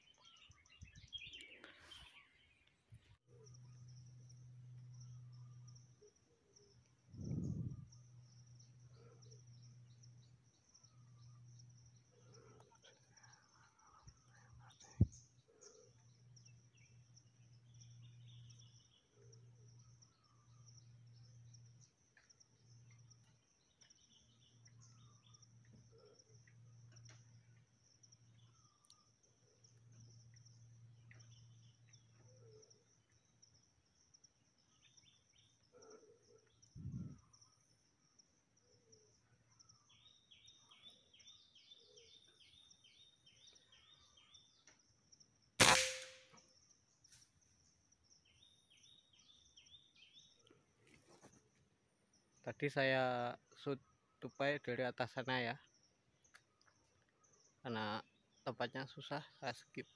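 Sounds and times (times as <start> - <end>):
bird chirps: 0.0 - 33.7, 38.8 - 44.8.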